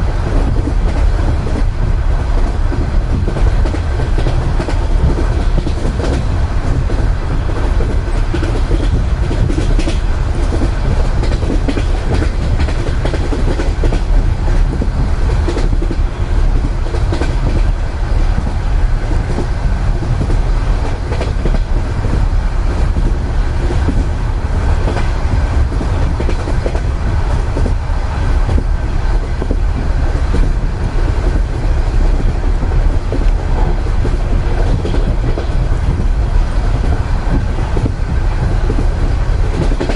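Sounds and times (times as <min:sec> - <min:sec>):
moving train rumble: 0:00.0 - 0:39.9
wheels clacking over rail joints: 0:02.3 - 0:39.9.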